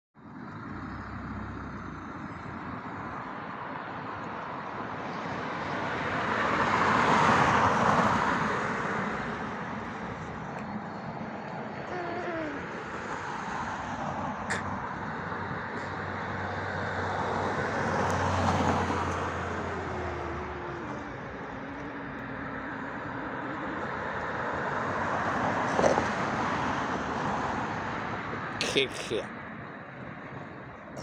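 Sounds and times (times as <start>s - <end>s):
road traffic noise: 0.2s - 31.0s
vehicle passing by: 5.4s - 28.5s.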